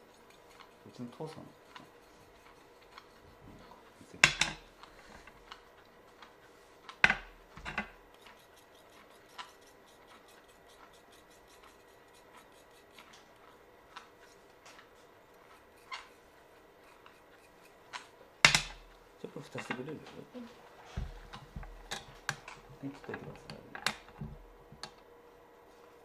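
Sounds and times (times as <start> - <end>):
teeth grinding with gritty scraping: 0.0 - 4.0, 8.0 - 18.2.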